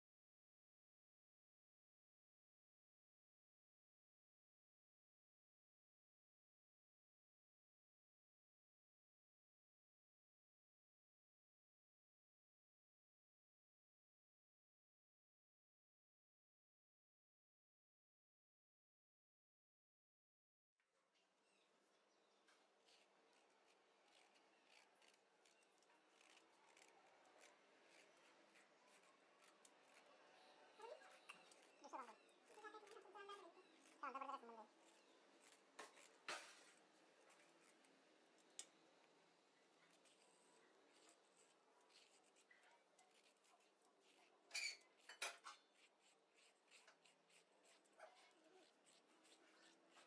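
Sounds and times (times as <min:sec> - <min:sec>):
faint light clicks and scrapes: 0:34.9 - 0:38.8, 0:44.5 - 0:45.7.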